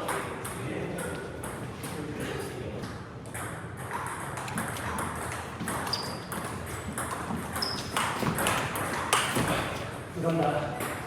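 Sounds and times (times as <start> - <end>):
table tennis balls clicking: 3.4 - 9.4
short high squeaks: 5.9 - 6.3.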